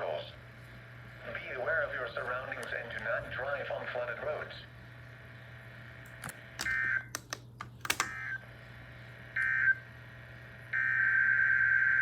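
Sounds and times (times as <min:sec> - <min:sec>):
steady low hum: 0:00.0 - 0:12.0
sharp clicks: 0:06.0 - 0:08.2.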